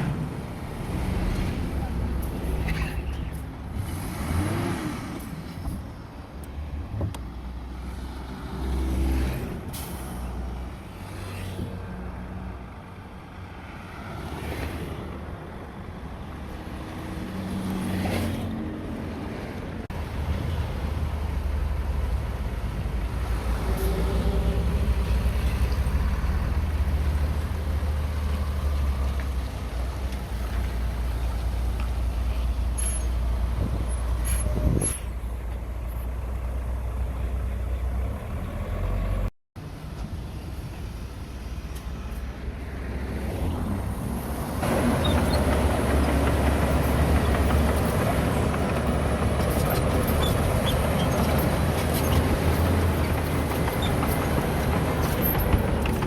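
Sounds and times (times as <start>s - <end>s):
deep diesel engine rumble: 19.9s - 39.3s, 43.9s - 56.0s.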